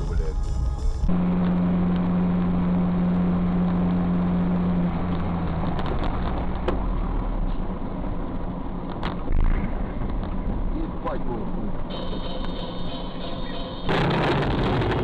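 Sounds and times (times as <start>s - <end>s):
low hum: 0.0s - 11.9s
vehicle engine and road noise: 0.0s - 15.0s.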